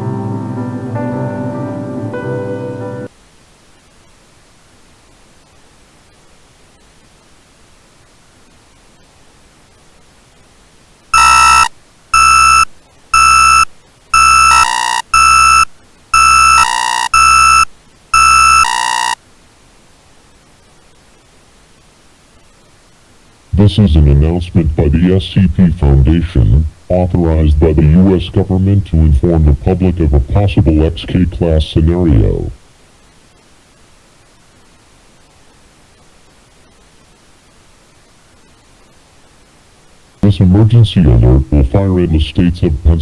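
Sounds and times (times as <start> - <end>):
static hiss: 0.0 - 43.0
harsh buzzy alert beeps: 11.2 - 19.2.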